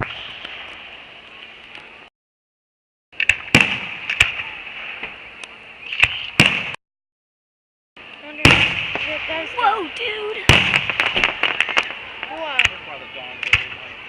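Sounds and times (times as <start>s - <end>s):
fireworks bangs and pops: 3.2s - 5.2s, 5.9s - 6.8s, 8.4s - 13.9s
steady hiss: 8.0s - 14.0s.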